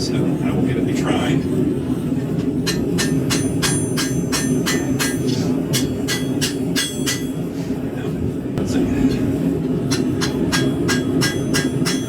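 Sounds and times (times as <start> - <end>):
hammer ringing on anvil: 2.7 - 7.5, 9.9 - 12.0.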